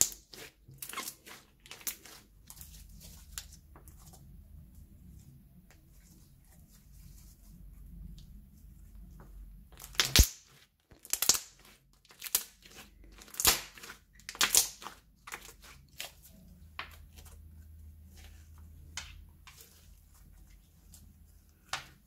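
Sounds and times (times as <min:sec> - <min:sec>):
slime squishing: 0:00.0 - 0:22.0.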